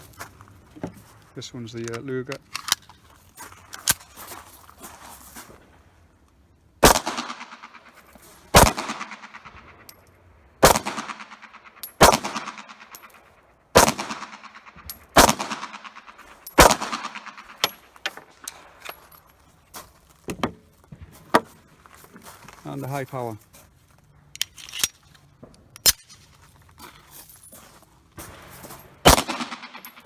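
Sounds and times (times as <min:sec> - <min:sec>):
pistol shots echoing: 0:06.8 - 0:07.9, 0:08.5 - 0:09.8, 0:10.6 - 0:13.0, 0:13.7 - 0:17.7, 0:28.2 - 0:30.0.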